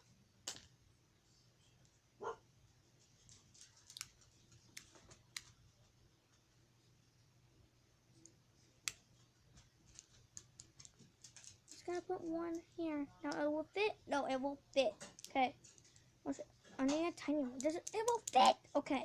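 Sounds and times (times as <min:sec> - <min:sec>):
plastic fidget toys clicking: 0:09.9 - 0:13.5, 0:14.7 - 0:16.1, 0:16.9 - 0:18.6.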